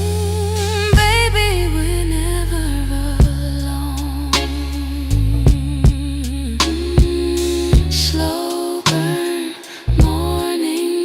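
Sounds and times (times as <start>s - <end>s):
slow drum beat: 0.0s - 1.6s, 3.2s - 9.4s, 10.0s - 10.4s
sustained bass: 0.0s - 9.2s, 9.9s - 10.5s.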